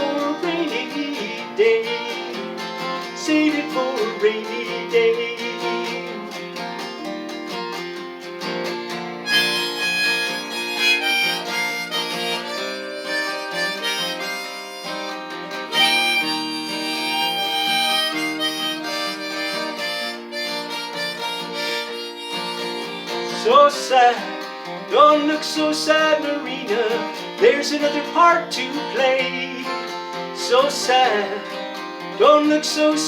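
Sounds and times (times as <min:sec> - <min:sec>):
strummed acoustic guitar: 0:00.0 - 0:33.0
harmonica solo: 0:08.8 - 0:25.4.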